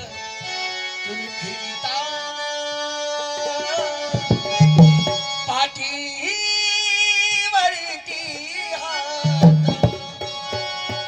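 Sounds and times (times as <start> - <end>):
hand drum strokes: 4.2 - 5.2.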